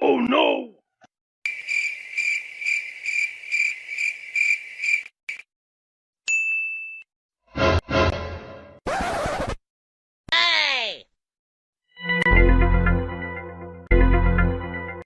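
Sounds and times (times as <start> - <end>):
crickets chirping sound effect: 1.5 - 5.4
high ding: 6.3 - 7.1.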